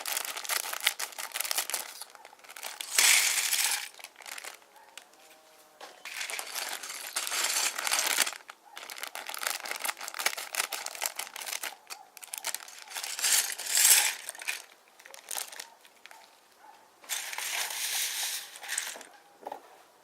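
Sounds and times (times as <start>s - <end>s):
plastic bag crinkling: 0.0s - 5.1s, 6.0s - 16.3s, 17.1s - 19.1s
plastic bricks clicking: 0.3s - 4.6s.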